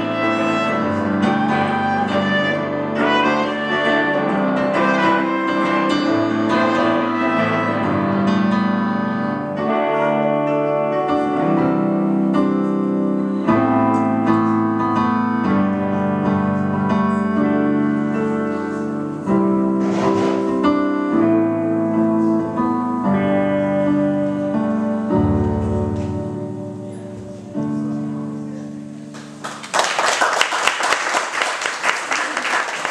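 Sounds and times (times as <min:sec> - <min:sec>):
live band playing: 0:00.0 - 0:12.3, 0:17.8 - 0:22.4
piano chords: 0:00.0 - 0:29.9.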